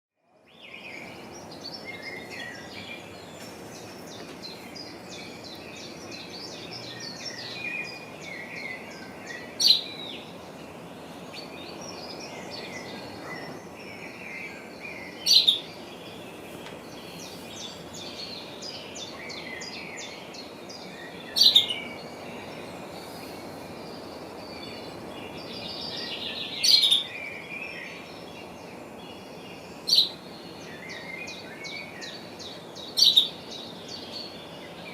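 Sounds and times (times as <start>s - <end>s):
background hiss: 0.4s - 34.9s
small birds chirping: 0.4s - 34.9s.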